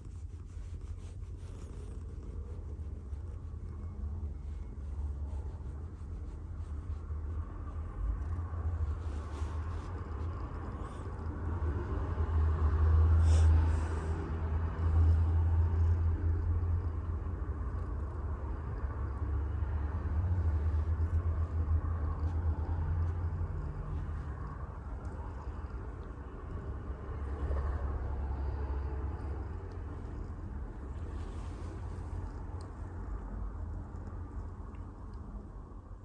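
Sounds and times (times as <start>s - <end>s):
soft rustling: 0.0s - 11.5s, 29.1s - 34.5s
cat purring: 0.0s - 36.0s.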